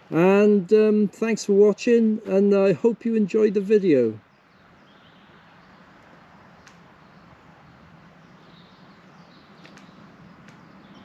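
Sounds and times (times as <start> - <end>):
distant bird chirps: 0.0 - 11.0
low hiss: 0.0 - 11.0
small ticks: 6.6 - 6.9, 9.6 - 11.0.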